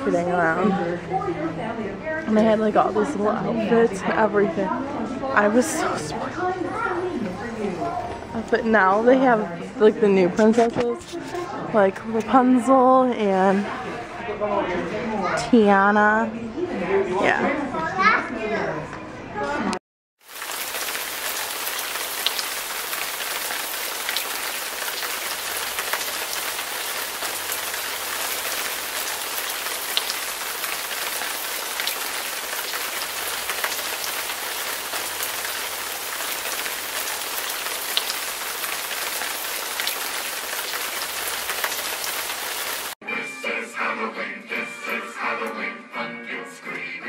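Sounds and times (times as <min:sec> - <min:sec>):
steady rain falling: 0:20.2 - 0:43.0.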